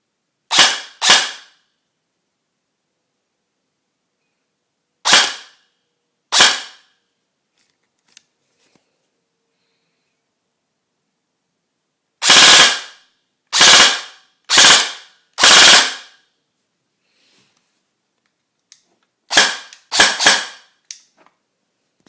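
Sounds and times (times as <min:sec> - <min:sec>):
airsoft rifle firing: 0:00.5 - 0:01.6, 0:05.0 - 0:05.6, 0:06.3 - 0:06.8, 0:12.2 - 0:16.2, 0:19.3 - 0:20.7.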